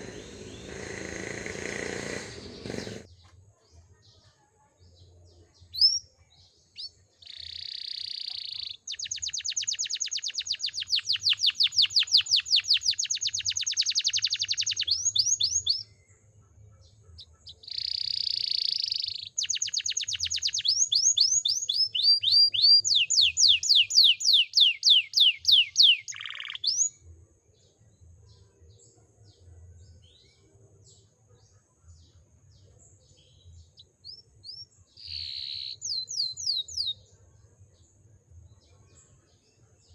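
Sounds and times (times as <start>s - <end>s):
canary singing trills: 0.0s - 3.3s, 5.6s - 16.0s, 16.7s - 27.0s, 33.2s - 37.1s
faint bird chirps: 0.0s - 39.9s.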